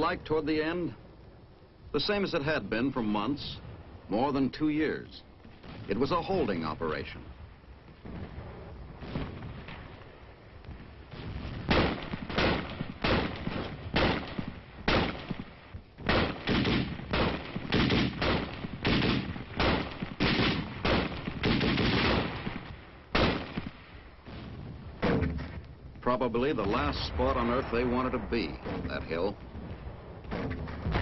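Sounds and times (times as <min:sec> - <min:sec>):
sharp single gunshots: 0:11.6 - 0:25.5.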